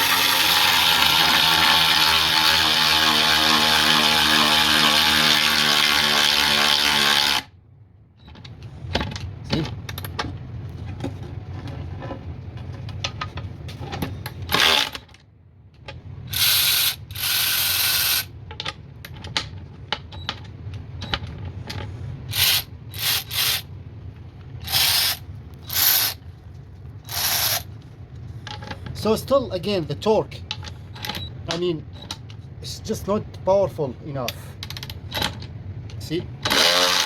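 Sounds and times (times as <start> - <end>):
electric ratchet running: 0.0 - 7.5, 16.3 - 18.3, 22.3 - 23.7, 24.6 - 26.2, 27.1 - 27.7, 36.4 - 37.0.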